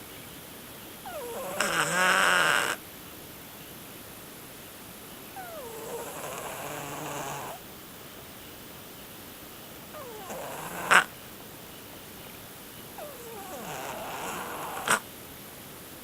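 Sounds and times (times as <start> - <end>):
cat snoring: 1.1 - 2.8, 5.4 - 7.6, 9.9 - 11.1, 13.0 - 15.0
cat snort: 1.1 - 2.8, 5.4 - 7.6, 9.9 - 11.1, 13.0 - 15.0.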